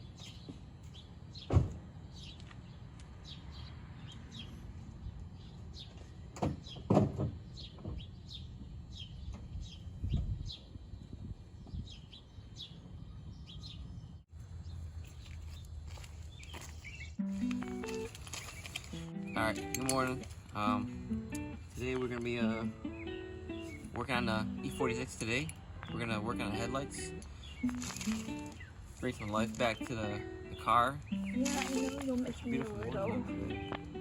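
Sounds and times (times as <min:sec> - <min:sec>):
small birds chirping: 0:00.0 - 0:34.0.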